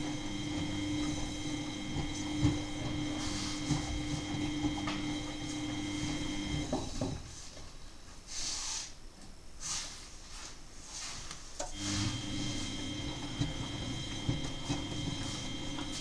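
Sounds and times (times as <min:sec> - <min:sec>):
washing machine drum motor hum: 0:00.0 - 0:07.6, 0:11.6 - 0:16.0
water swishing in drum: 0:00.0 - 0:07.6, 0:11.7 - 0:16.0.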